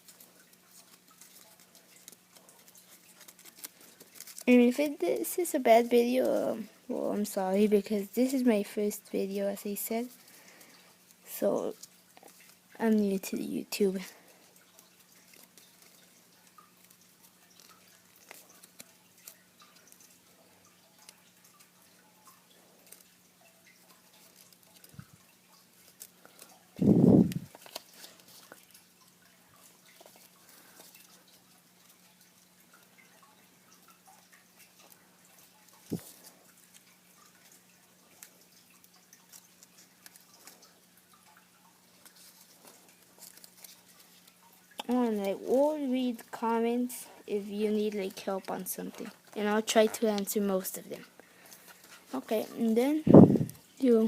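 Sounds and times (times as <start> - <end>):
paper crinkling and folding: 0.0 - 6.7, 13.8 - 33.3, 34.0 - 41.2, 41.8 - 54.0
low steady hum: 0.0 - 54.0.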